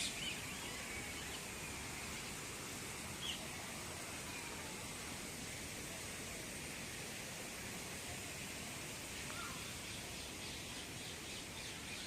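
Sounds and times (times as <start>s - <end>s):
background hiss: 0.0s - 12.0s
faint bird chirps: 9.3s - 12.0s.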